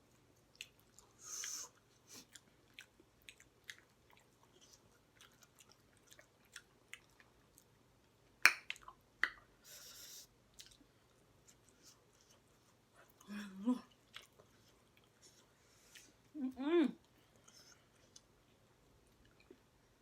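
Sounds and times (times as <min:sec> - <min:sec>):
chewing and biting: 0:00.5 - 0:07.7.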